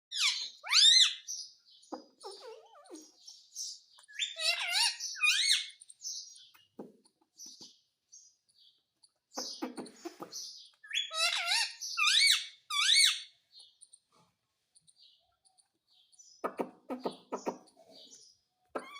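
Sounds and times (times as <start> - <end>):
parrot shrill calls: 0.1 - 1.3, 4.1 - 5.8, 10.9 - 13.3
parrot chattering: 4.1 - 6.0, 9.3 - 13.8.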